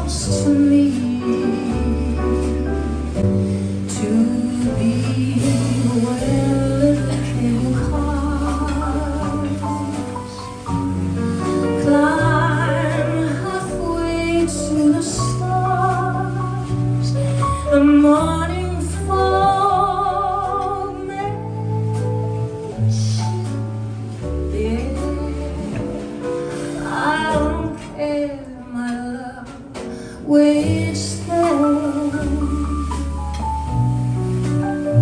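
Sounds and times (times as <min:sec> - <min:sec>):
woman singing with vibrato: 0:00.0 - 0:03.1, 0:03.9 - 0:11.0, 0:11.7 - 0:23.8, 0:24.5 - 0:33.4
held bass notes: 0:00.0 - 0:27.7, 0:30.6 - 0:35.0.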